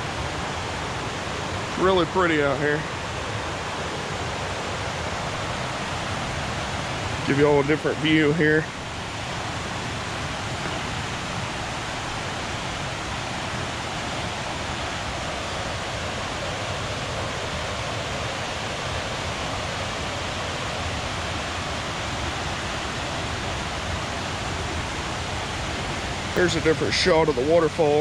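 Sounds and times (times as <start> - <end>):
waterfall rushing: 0.0 - 28.0.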